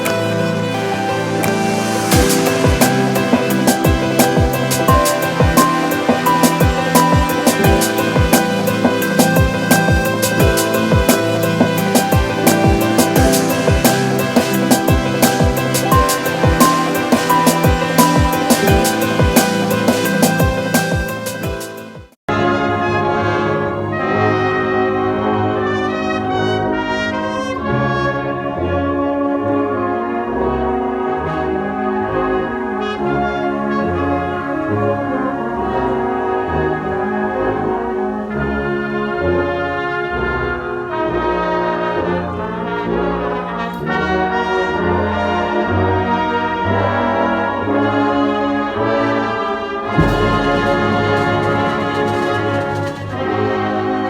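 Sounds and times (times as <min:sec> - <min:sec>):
background music with bass line: 0:00.0 - 0:22.0, 0:49.9 - 0:53.4
orchestral brass chords: 0:00.0 - 0:44.0, 0:49.8 - 0:53.9.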